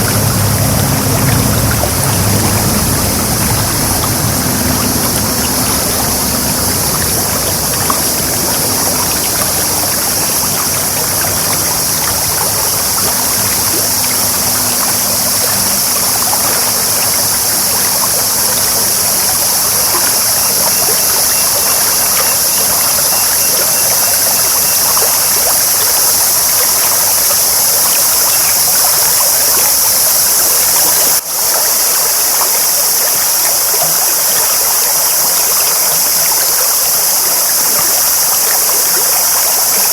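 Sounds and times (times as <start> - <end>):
stream babbling: 0.0 - 39.9.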